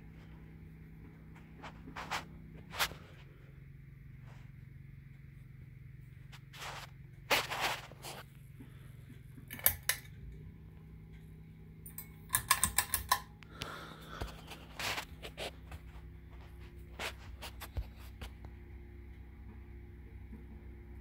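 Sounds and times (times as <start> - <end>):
low steady hum: 0.0 - 21.0
sharp clicks: 11.9 - 13.7.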